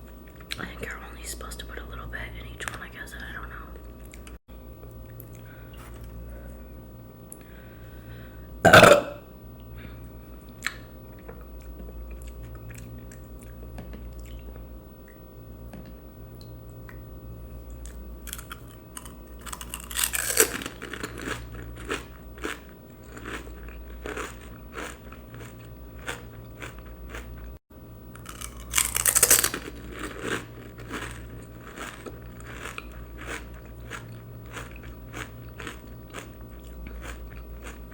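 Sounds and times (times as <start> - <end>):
crisp shells crunching and chewed: 17.8 - 27.6, 28.2 - 37.9.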